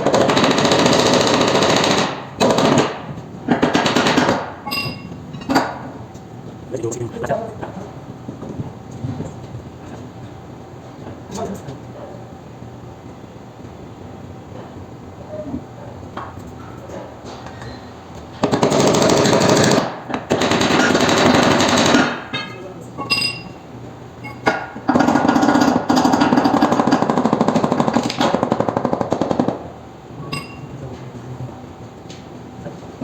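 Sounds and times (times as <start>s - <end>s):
power impact tool hammering: 18.4s - 22.4s, 24.4s - 29.6s.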